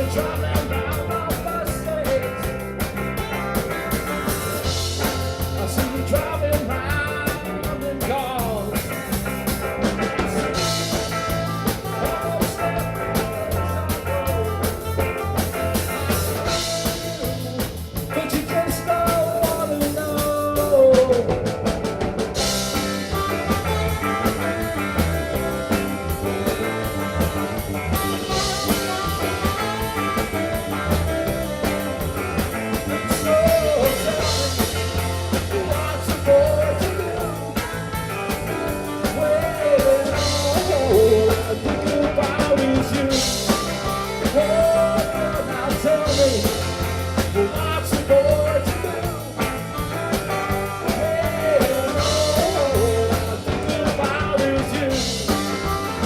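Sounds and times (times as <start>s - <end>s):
bending lead guitar melody: 0.0s - 56.0s
drum kit with cymbal crashes: 0.0s - 56.0s
steady bass: 0.0s - 56.0s.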